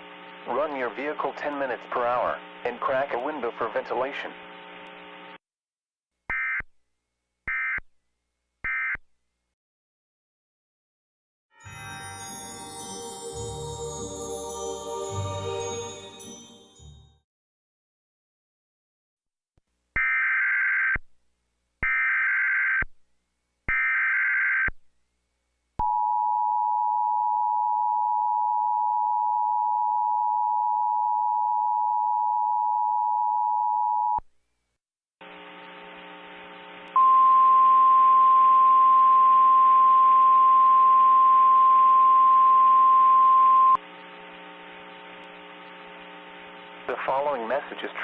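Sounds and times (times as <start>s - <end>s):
single steady tone: 37.0s - 43.8s.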